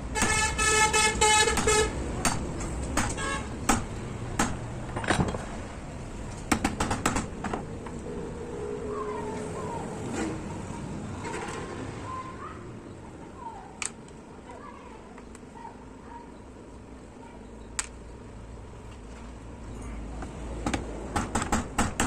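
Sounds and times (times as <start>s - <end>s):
metal parts clicking and knocking: 1.5s - 5.5s.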